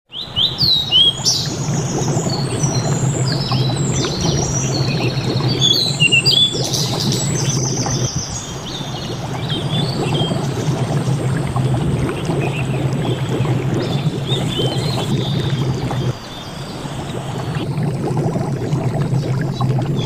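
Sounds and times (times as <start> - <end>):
birds chirping and whistling: 0.1 - 10.6.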